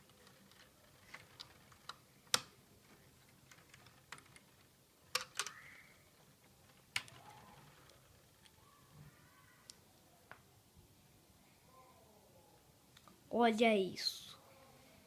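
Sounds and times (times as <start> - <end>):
plastic bricks clicking: 0.0 - 5.7, 6.4 - 8.6.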